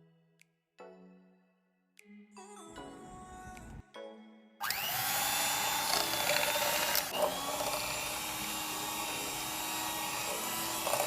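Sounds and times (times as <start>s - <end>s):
blender motor whining: 4.6s - 11.0s.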